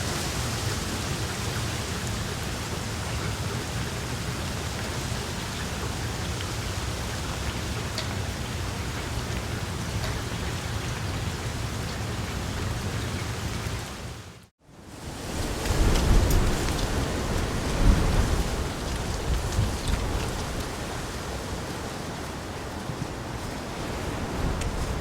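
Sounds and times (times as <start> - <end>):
heavy rain falling: 0.0 - 14.5, 15.1 - 25.0
rain drop ticks: 5.6 - 11.2.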